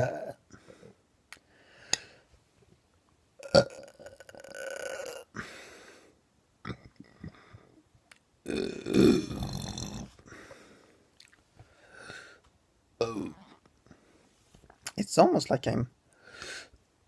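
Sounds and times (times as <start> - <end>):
person burping: 0.0 - 0.5, 3.4 - 5.5, 6.6 - 7.3, 8.4 - 10.2, 13.0 - 13.6.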